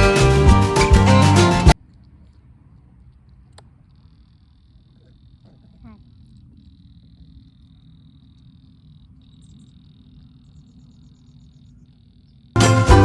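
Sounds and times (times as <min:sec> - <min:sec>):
loud music with jingling bells: 0:00.0 - 0:01.8, 0:12.6 - 0:13.0
faint low rumble: 0:01.8 - 0:12.5.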